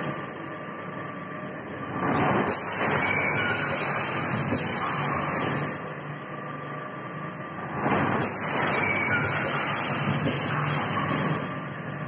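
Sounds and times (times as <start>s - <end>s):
packaging machine running with hiss: 1.9s - 6.0s, 7.5s - 12.0s.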